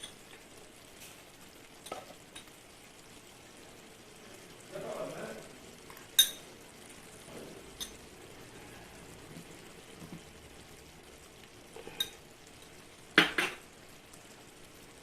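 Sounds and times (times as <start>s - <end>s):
faint sizzle of cooking: 0.0s - 15.0s
metal spoon clinking on pan: 6.1s - 6.4s, 7.8s - 8.0s.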